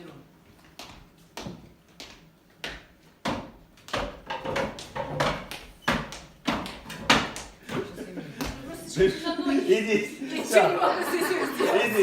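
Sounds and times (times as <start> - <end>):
footsteps thudding on a floor: 0.8 - 8.7.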